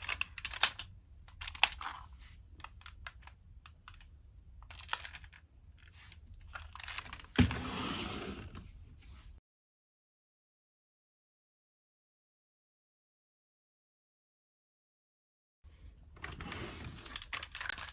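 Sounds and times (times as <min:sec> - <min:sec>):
plastic toy parts clicking: 0:00.0 - 0:02.0, 0:02.6 - 0:05.9, 0:17.0 - 0:17.9.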